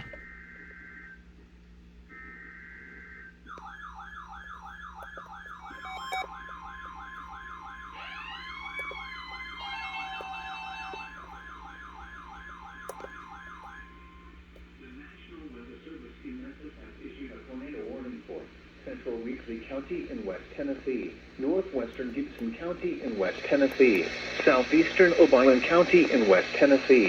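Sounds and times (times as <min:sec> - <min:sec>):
electronic siren warbling: 0:02.6 - 0:14.4.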